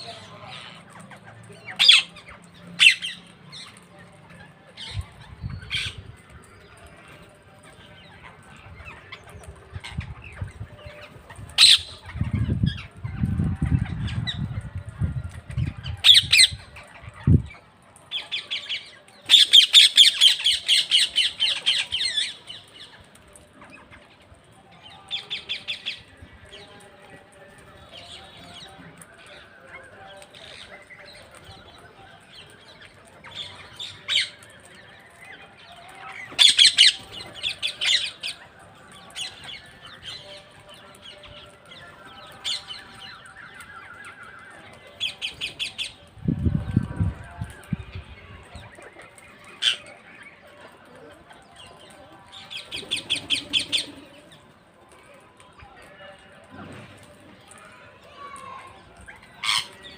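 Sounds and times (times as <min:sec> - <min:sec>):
parrots squawking: 0:11.6 - 0:12.8, 0:19.3 - 0:22.4.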